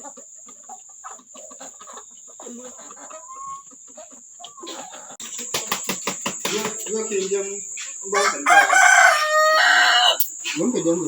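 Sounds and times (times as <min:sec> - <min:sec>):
chickens clucking: 0:00.0 - 0:11.0
high-pitched insect drone: 0:05.2 - 0:11.0.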